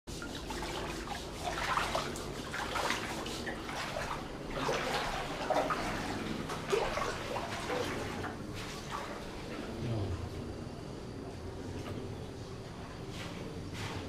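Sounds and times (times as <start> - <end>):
water splashing and sloshing: 0.1 - 14.0
steady water rush: 0.7 - 10.3.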